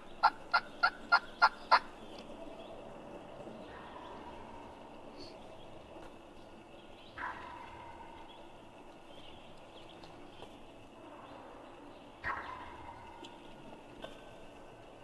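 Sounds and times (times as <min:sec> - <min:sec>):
turkey gobbling: 0:00.0 - 0:02.0.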